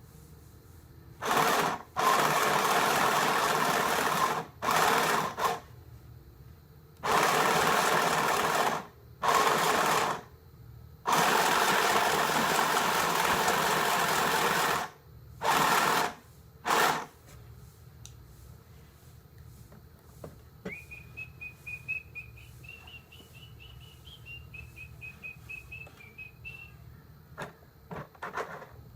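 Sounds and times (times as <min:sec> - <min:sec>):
sewing machine running: 0:01.2 - 0:05.7, 0:07.0 - 0:10.3, 0:11.1 - 0:17.1.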